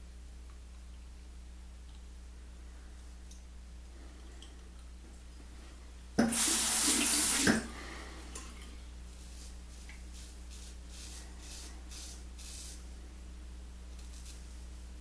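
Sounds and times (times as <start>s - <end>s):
sink tap running: 6.2s - 7.7s.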